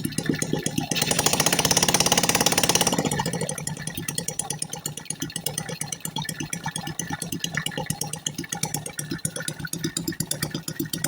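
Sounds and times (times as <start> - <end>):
engine idling: 0.0 - 5.8.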